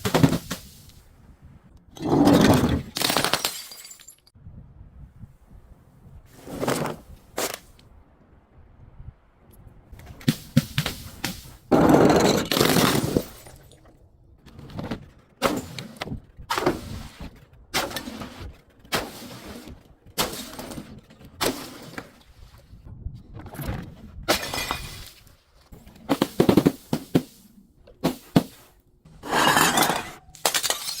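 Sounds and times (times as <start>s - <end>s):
glass breaking and crunching: 2.1s - 4.3s, 24.3s - 25.2s, 29.4s - 31.0s.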